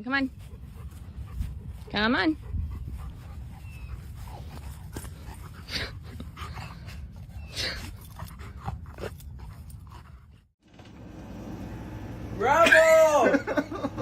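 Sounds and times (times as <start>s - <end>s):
dog panting puffs: 0.3s - 10.5s.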